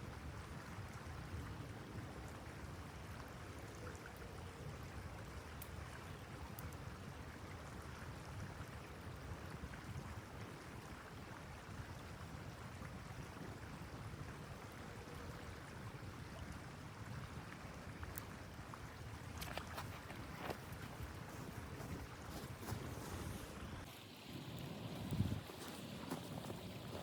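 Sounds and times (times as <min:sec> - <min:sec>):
wind rumbling on microphone: 0:15.3 - 0:27.0.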